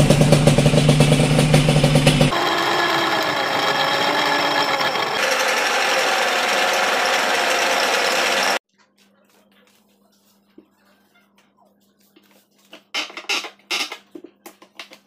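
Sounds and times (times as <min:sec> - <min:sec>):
machine rattling: 0:00.0 - 0:08.6.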